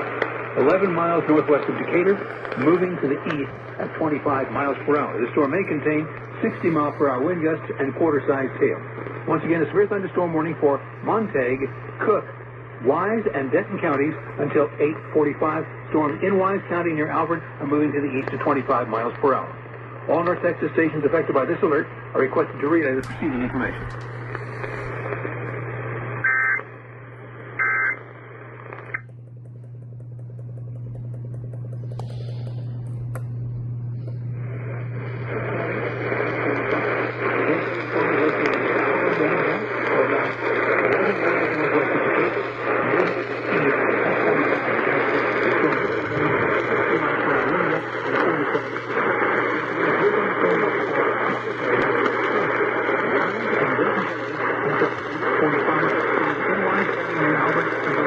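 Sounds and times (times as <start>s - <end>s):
radio hiss: 0.0s - 58.0s
steady low hum: 0.0s - 58.0s
buzzy digital data tones: 26.2s - 26.6s, 27.6s - 28.0s.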